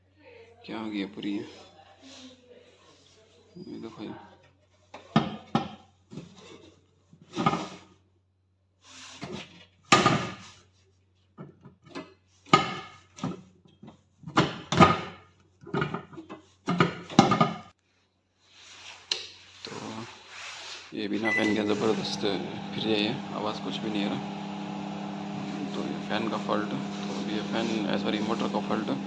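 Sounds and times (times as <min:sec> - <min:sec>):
clunks and scrapes: 0:04.5 - 0:08.0, 0:11.3 - 0:17.8
fan motor humming: 0:21.2 - 0:29.0.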